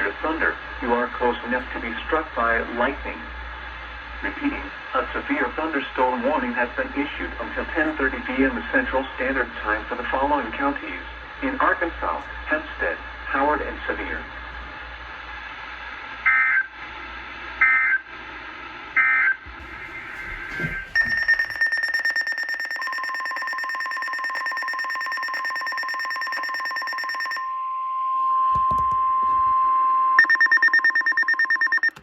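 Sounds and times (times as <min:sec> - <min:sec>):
steady warning alert tone: 0:19.6 - 0:27.5, 0:30.2 - 0:32.0
rapidly pulsing electronic beep: 0:19.8 - 0:27.5, 0:30.2 - 0:32.0
warbling digital data tones: 0:20.8 - 0:27.4, 0:30.2 - 0:31.9.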